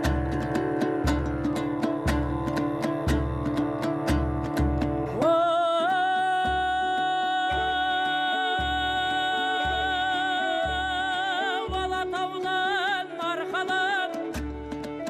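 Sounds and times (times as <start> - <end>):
deep beat: 0.0 - 5.3.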